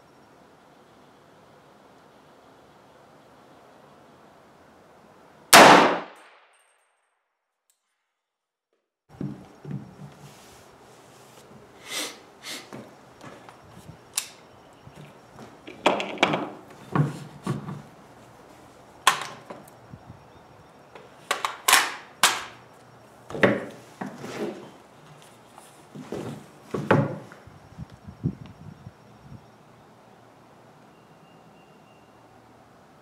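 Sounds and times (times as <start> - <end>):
hard objects knocking: 15.6 - 17.8.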